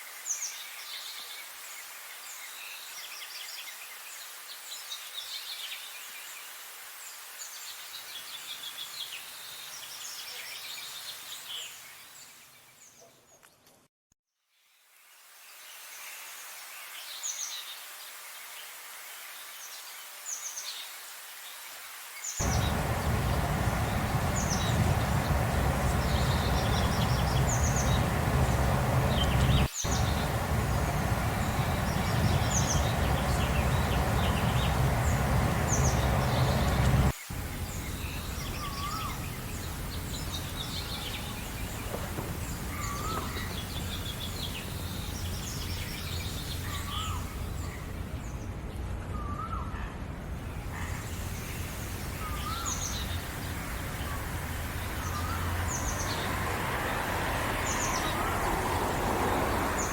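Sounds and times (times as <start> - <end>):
loud low rumbling noise: 22.4 - 48.2
songbirds chirping: 22.4 - 59.9.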